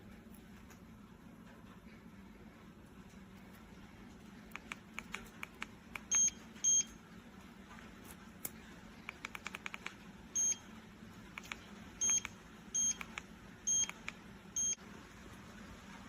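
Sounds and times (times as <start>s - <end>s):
short high-pitched beeps: 10.4s - 10.6s, 12.0s - 14.8s.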